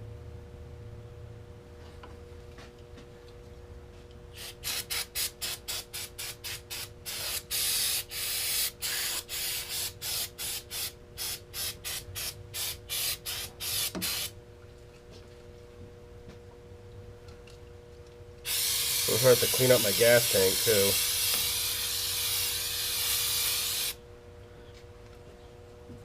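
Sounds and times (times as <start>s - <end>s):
aerosol can spraying: 4.4s - 14.3s, 18.5s - 24.0s.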